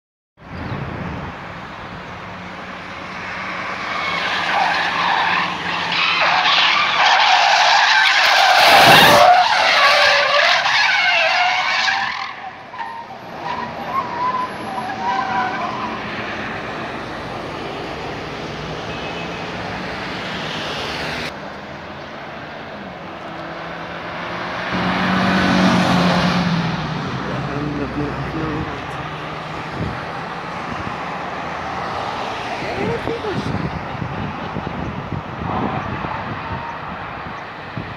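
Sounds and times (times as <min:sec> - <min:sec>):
road noise: 0:00.4 - 0:37.9
tyres squealing: 0:03.4 - 0:16.2.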